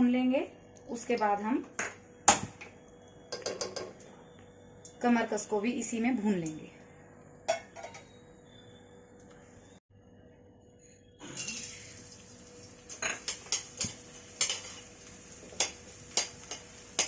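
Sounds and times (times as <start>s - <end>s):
soft frying sizzle: 11.2s - 17.0s
metal spoon clinking on metal pan: 13.0s - 14.9s, 15.5s - 17.0s.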